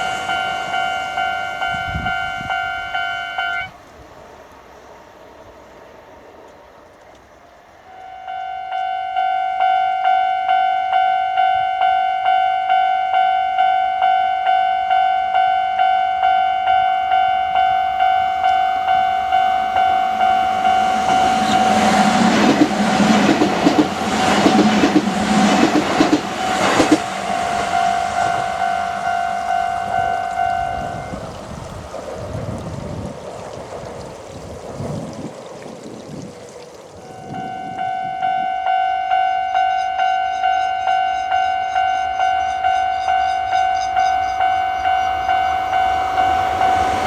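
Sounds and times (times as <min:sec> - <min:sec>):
train wheels clacking over rails: 0:19.8 - 0:33.4.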